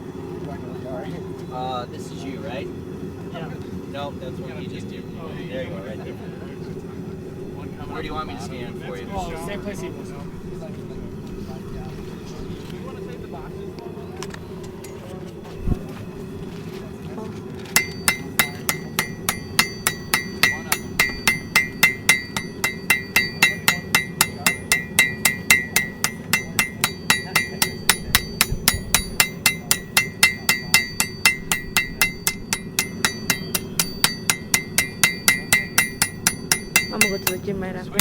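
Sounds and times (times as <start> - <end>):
hammer striking iron on anvil: 17.8 - 37.5.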